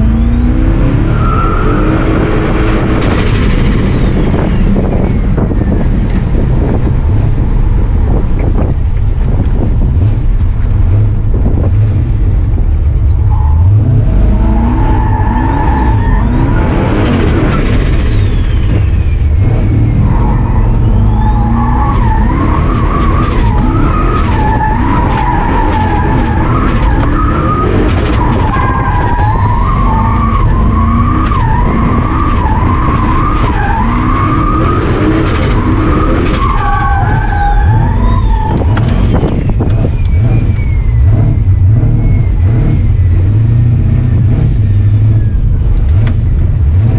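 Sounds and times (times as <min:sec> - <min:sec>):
constant low rumble: 0:00.0 - 0:46.9
high turbo whine: 0:00.0 - 0:46.9
pickup engine revving: 0:00.0 - 0:46.9
tyres squealing: 0:19.9 - 0:41.4.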